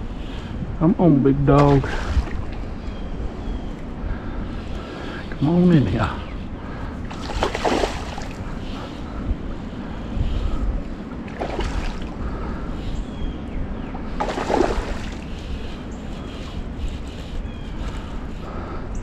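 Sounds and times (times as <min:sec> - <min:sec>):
wind buffeting microphone: 0:00.0 - 0:19.0
stream water rushing: 0:07.1 - 0:08.5, 0:14.2 - 0:15.4.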